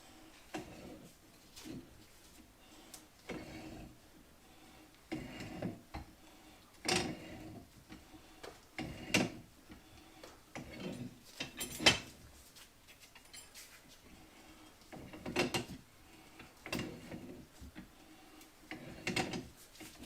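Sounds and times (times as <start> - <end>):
hand tools clinking on metal: 11.4 - 12.1.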